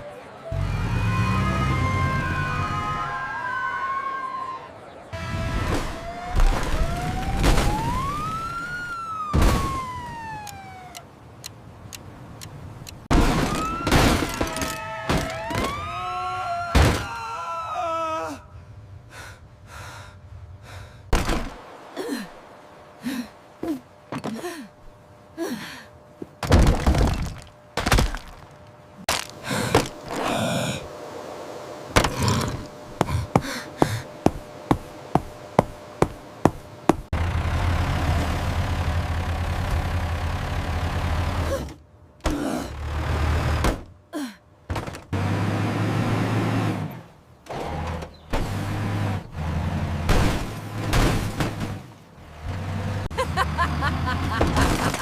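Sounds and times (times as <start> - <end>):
knocks and thuds: 21.1 - 21.6, 26.4 - 28.4, 32.0 - 37.1, 44.7 - 45.2
sharp evenly spaced taps: 33.0 - 37.1.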